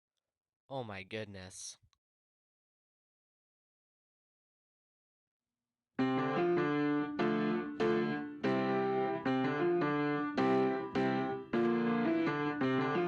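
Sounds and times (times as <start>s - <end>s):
piano music: 6.0s - 13.0s.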